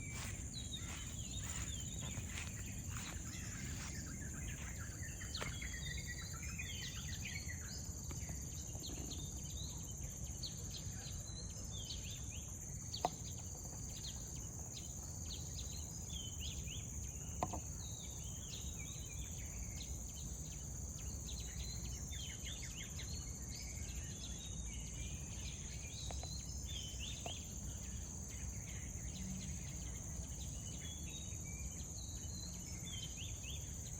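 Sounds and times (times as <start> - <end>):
birds chirping: 0.0 - 7.5
high insect drone: 0.0 - 8.6, 11.7 - 33.9.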